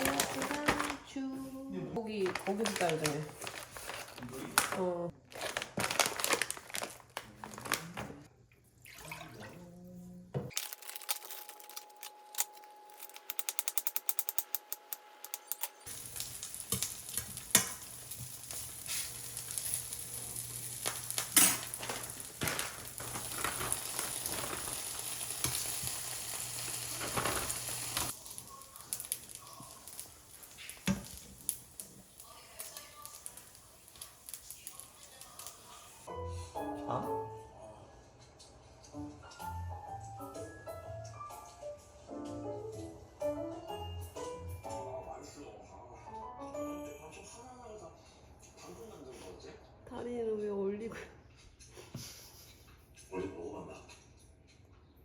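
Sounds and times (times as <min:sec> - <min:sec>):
meat sizzling in a pan: 0:15.8 - 0:36.1.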